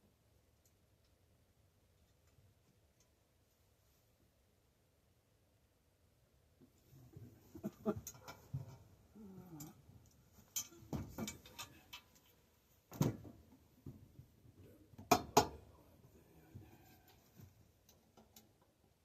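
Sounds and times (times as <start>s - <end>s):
metal tools clanking on metal: 10.4s - 12.2s.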